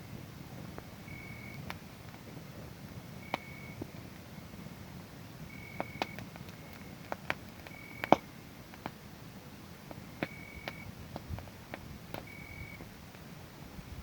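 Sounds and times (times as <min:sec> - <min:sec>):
wood fire crackling and popping: 0:00.0 - 0:14.0
cricket chirping: 0:01.1 - 0:01.7, 0:03.2 - 0:03.8, 0:05.5 - 0:07.0, 0:07.6 - 0:08.3, 0:10.2 - 0:10.9, 0:12.2 - 0:12.9.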